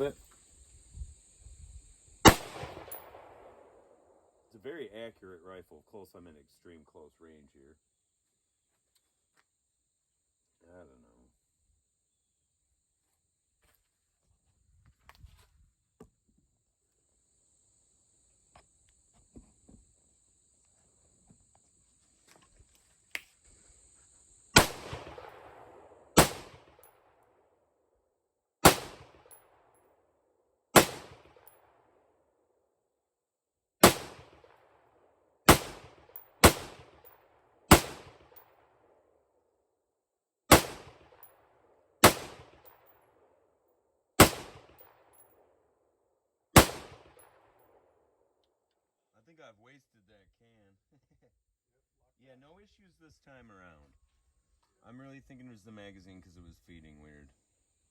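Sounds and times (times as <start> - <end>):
rifle shots with echo: 2.2 - 4.2, 24.6 - 27.2, 28.6 - 29.7, 30.7 - 32.0, 33.8 - 34.8, 35.5 - 38.7, 40.5 - 41.3, 42.0 - 42.9, 44.2 - 45.2, 46.6 - 47.7.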